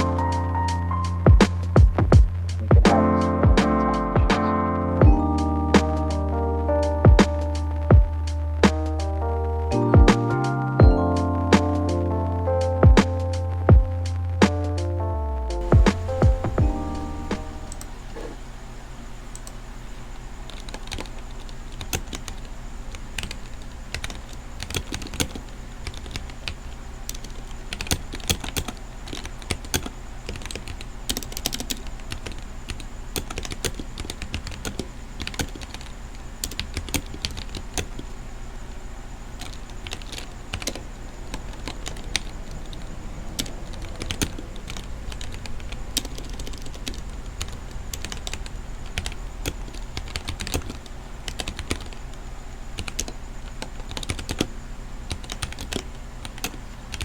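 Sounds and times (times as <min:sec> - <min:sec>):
mechanical keyboard typing: 0:20.5 - 0:38.1, 0:39.4 - 0:52.2, 0:52.8 - 0:54.5, 0:55.1 - 0:57.0.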